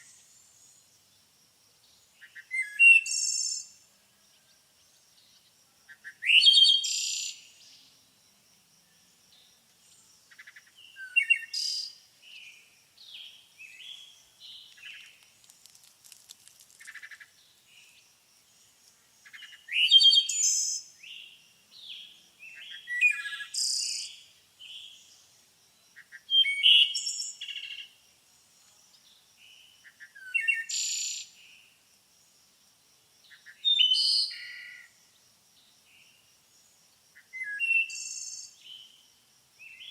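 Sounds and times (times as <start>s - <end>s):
loud bird song phrases: 1.8s - 8.0s, 8.9s - 15.2s, 18.6s - 25.3s, 26.0s - 31.8s, 33.2s - 39.0s, 39.6s - 39.9s.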